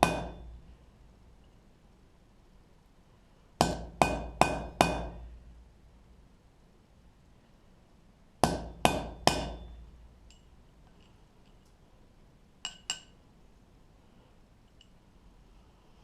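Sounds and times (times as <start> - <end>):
hammer striking steel punch: 0.0 - 0.5, 3.6 - 5.2, 8.4 - 9.8
faint metal clinks: 9.6 - 11.8, 12.6 - 13.3, 14.6 - 15.2.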